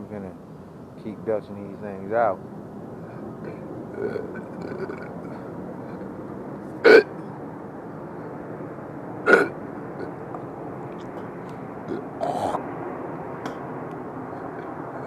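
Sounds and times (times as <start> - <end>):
steady background noise: 0.0 - 15.0
man belching: 3.4 - 6.0, 6.8 - 7.2, 9.3 - 10.1, 11.9 - 12.6.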